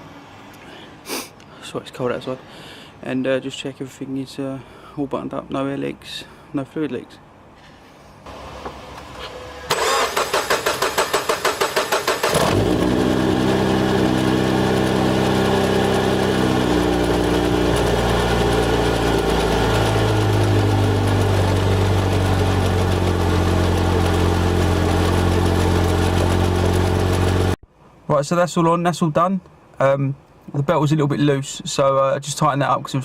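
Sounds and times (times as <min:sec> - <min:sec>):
car engine cranking on starter: 0:08.5 - 0:27.6
car engine idling: 0:09.8 - 0:27.6.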